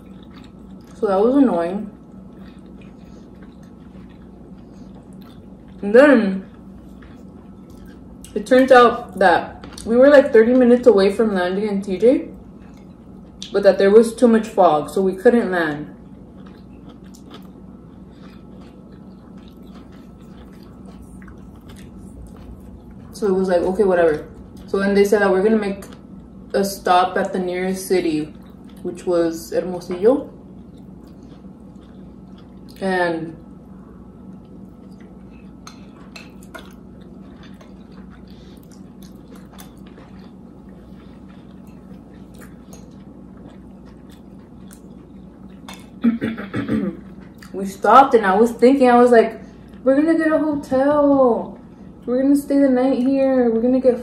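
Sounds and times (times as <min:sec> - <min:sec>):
person chewing and biting: 0:00.0 - 0:01.0, 0:02.0 - 0:05.8, 0:16.0 - 0:23.2, 0:30.4 - 0:32.8, 0:34.2 - 0:46.0
low hum: 0:00.0 - 0:54.0.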